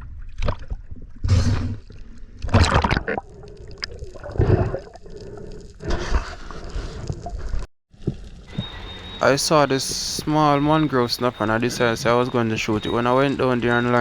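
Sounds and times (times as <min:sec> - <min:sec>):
water sloshing and gurgling: 0:00.0 - 0:09.2.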